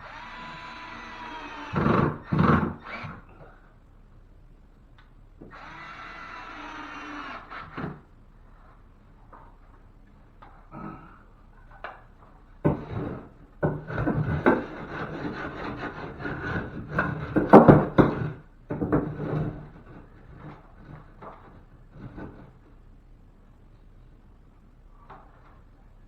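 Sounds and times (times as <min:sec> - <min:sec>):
wood rubbing and scraping: 0:11.7 - 0:22.8.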